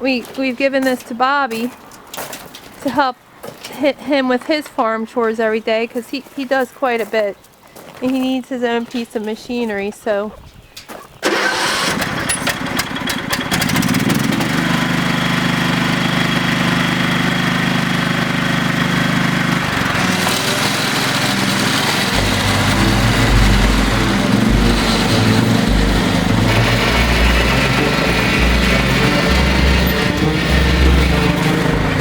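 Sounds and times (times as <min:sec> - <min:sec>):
tractor engine running: 0:11.2 - 0:32.0.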